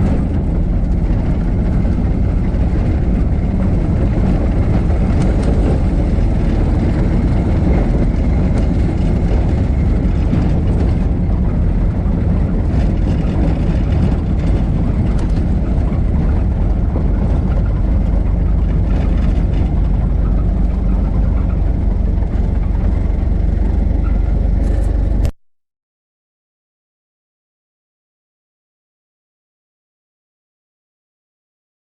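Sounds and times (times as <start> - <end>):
car engine running: 0.0 - 25.4.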